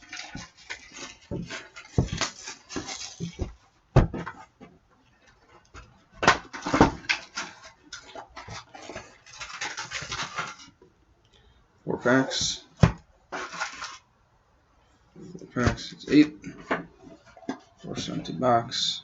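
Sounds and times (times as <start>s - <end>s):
shrink-wrap crinkling: 0.0s - 3.8s, 5.2s - 10.8s, 13.3s - 14.1s
cardboard rustling: 0.0s - 10.8s, 12.3s - 14.1s.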